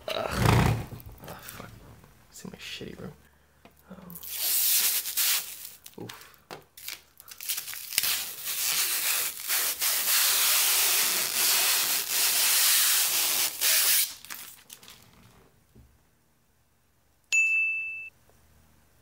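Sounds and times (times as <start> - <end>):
plastic film peeling off screen: 4.2 - 6.2, 6.8 - 15.4.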